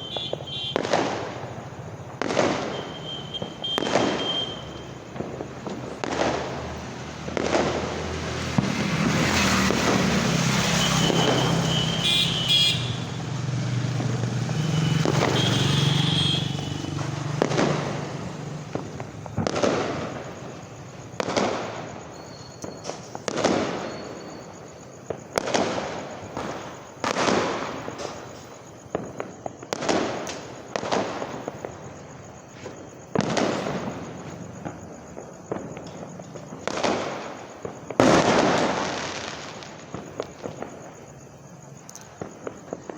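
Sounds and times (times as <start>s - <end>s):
firecrackers banging: 0.0s - 42.9s.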